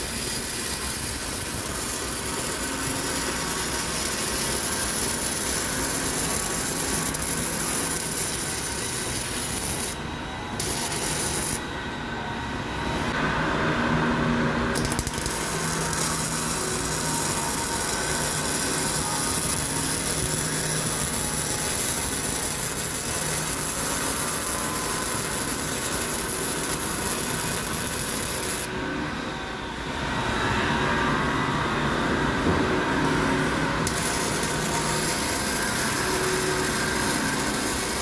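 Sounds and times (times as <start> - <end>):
welding arc hissing: 0.0 - 10.0, 10.6 - 11.6, 14.8 - 28.7, 33.8 - 38.0.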